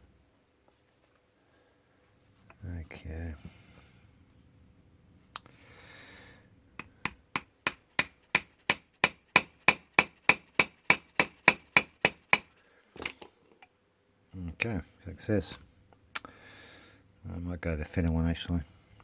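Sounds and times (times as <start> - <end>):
hammer tapping metal punch: 6.8 - 13.2.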